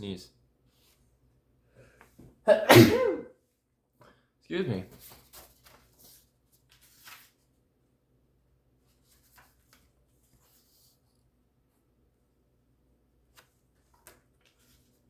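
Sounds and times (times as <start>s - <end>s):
magazine pages rustling: 4.9s - 7.5s, 8.8s - 11.1s.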